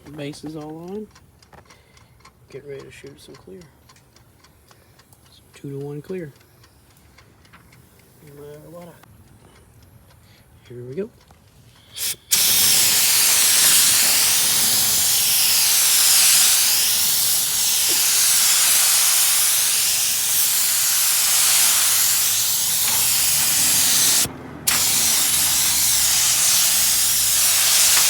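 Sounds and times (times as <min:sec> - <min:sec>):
paint spray gun hissing: 0:12.0 - 0:28.0.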